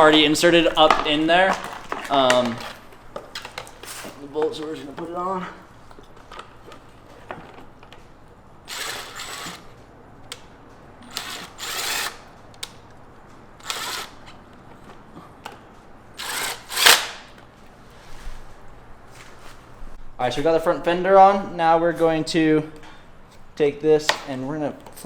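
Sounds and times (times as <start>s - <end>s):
power drill driving bolts: 8.6s - 9.8s, 11.0s - 12.3s, 13.6s - 14.3s, 16.2s - 17.4s.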